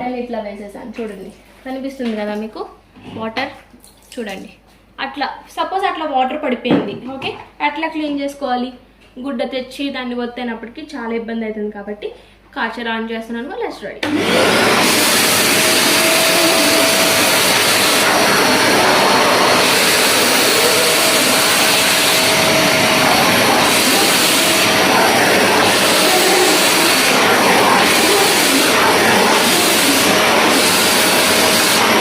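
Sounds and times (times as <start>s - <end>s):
wet vacuum cleaner running: 14.0s - 32.0s.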